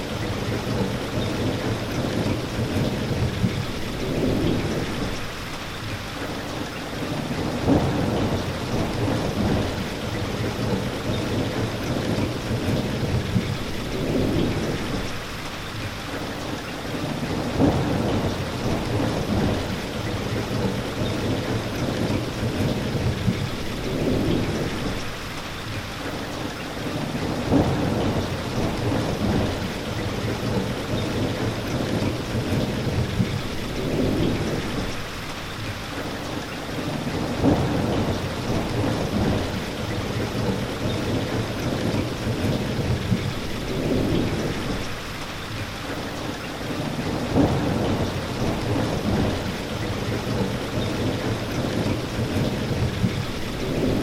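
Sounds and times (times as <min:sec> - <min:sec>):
steady rain hissing: 0:00.0 - 0:54.0
thunder rumbling: 0:07.3 - 0:15.3, 0:17.2 - 0:25.2, 0:27.2 - 0:35.2, 0:37.0 - 0:45.2, 0:46.8 - 0:54.0.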